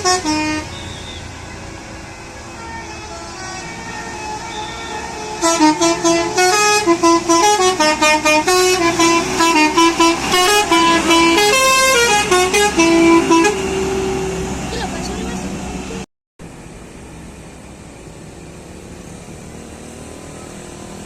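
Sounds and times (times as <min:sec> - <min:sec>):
bus horn playing a melody: 0:00.0 - 0:15.6.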